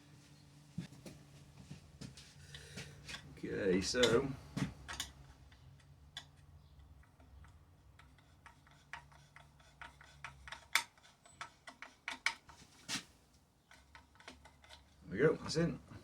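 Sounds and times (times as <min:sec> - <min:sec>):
light metallic clicks and taps: 0:04.0 - 0:08.1.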